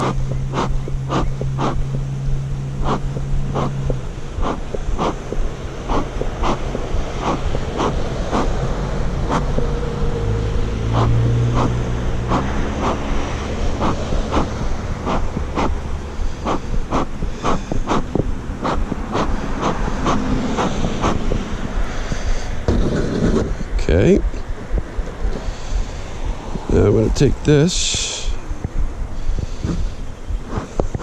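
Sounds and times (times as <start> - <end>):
bellows puffing air: 0.0 - 1.9, 2.8 - 31.0
bees humming: 0.0 - 22.7.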